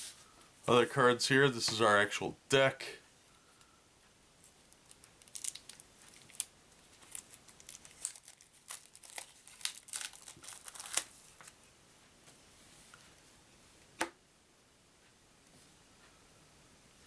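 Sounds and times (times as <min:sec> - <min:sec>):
plastic wrapping crinkling: 0:04.4 - 0:11.6.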